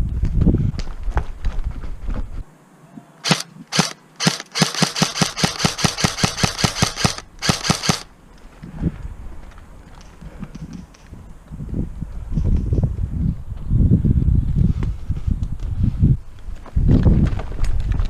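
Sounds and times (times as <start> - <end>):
airsoft gun shots: 3.2 - 8.1.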